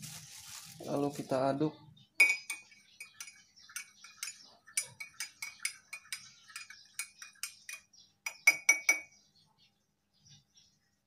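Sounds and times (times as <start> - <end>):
spoon clinking in a glass: 2.2 - 9.1.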